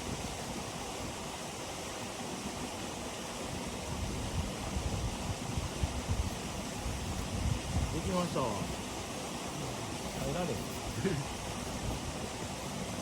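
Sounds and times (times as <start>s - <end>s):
steady rushing wind: 0.0s - 13.0s
wind buffeting microphone: 3.9s - 9.1s.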